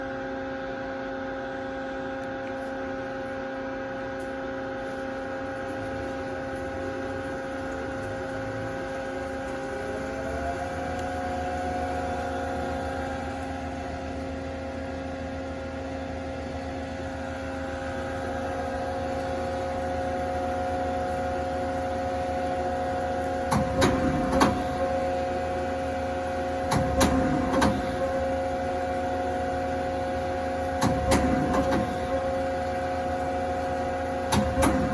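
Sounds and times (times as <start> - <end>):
machine electric hum: 0.0 - 34.9
machine whine: 0.0 - 34.9.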